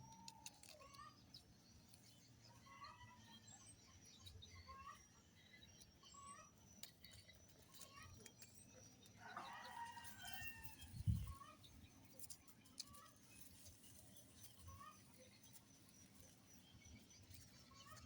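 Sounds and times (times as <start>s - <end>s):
small birds chirping: 0.0s - 18.0s
faint rooster crowing: 9.1s - 11.5s.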